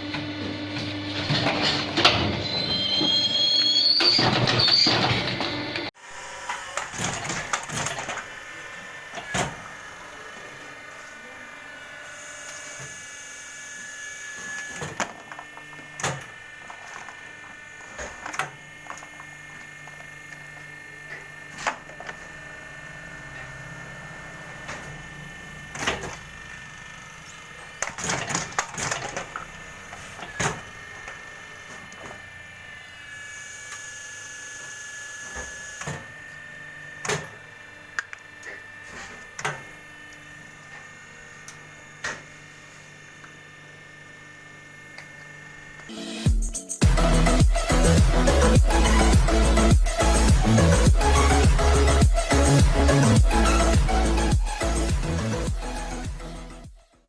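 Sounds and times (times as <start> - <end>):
machine humming: 0.0 - 56.7
machine hiss with rising whine: 5.8 - 56.4
machine mechanism clicks and knocks: 6.5 - 8.4, 24.6 - 32.2.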